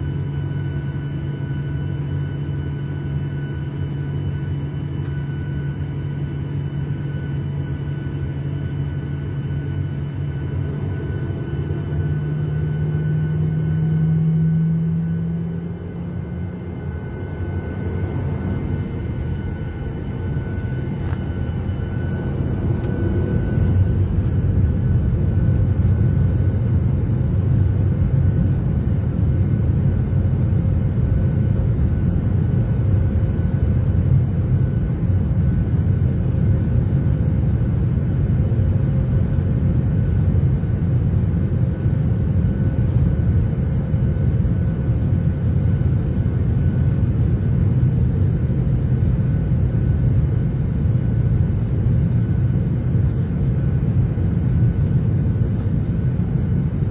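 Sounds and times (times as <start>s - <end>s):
jet engine and airflow rumble: 0.0s - 56.9s.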